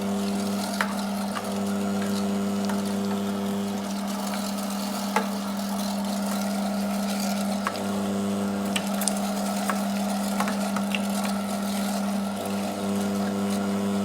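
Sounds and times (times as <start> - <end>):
meat grinder motor humming: 0.0 - 14.0
sharp clicks and cracks: 0.2 - 7.9, 8.6 - 13.6.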